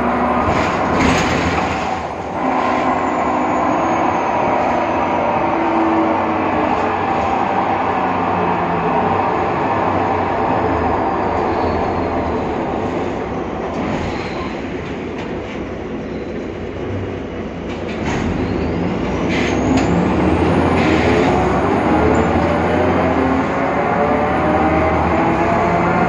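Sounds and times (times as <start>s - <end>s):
bus engine running: 0.0s - 26.0s.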